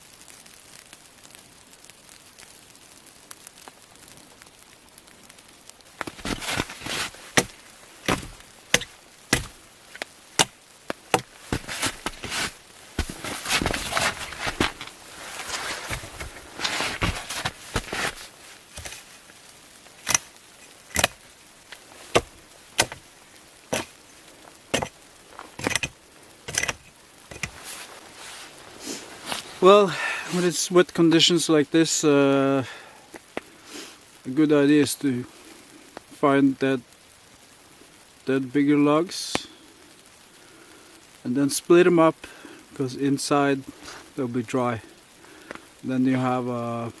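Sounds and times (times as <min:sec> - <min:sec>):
wood cracking and crunching: 0:00.0 - 0:31.0
axe chopping logs: 0:06.0 - 0:18.2, 0:20.0 - 0:20.3, 0:20.9 - 0:21.2, 0:22.1 - 0:23.0, 0:23.7 - 0:23.9, 0:24.7 - 0:25.9, 0:26.5 - 0:27.6.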